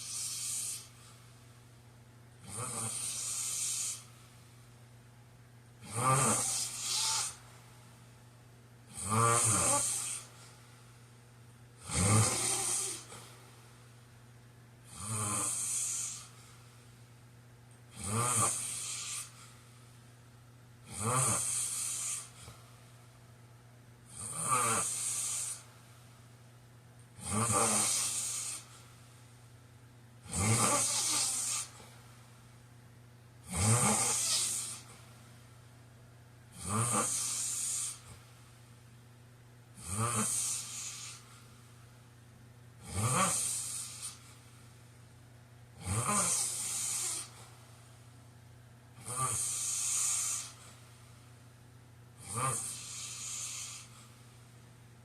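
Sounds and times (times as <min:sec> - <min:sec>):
man snoring with rattle: 0:00.0 - 0:01.1, 0:02.4 - 0:04.2, 0:05.8 - 0:07.4, 0:08.9 - 0:10.5, 0:11.8 - 0:13.3, 0:14.8 - 0:16.5, 0:17.9 - 0:19.5, 0:20.8 - 0:22.6, 0:24.1 - 0:25.7, 0:27.2 - 0:28.8, 0:30.2 - 0:32.0, 0:33.4 - 0:35.0, 0:36.5 - 0:38.2, 0:39.8 - 0:41.4, 0:42.8 - 0:44.4, 0:45.8 - 0:47.5, 0:48.9 - 0:50.8, 0:52.2 - 0:54.2.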